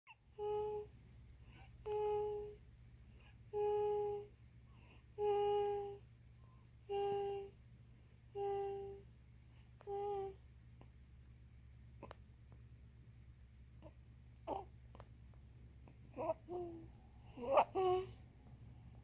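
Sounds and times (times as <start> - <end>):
child humming while eating: 0.4 - 0.9, 1.9 - 2.6, 3.5 - 4.3, 5.2 - 6.0, 6.9 - 7.5, 8.4 - 9.0.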